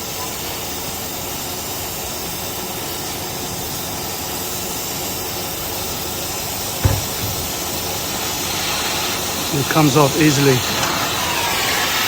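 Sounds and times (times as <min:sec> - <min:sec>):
torch flame hissing: 0:00.0 - 0:12.0
short low thump: 0:06.8 - 0:07.8.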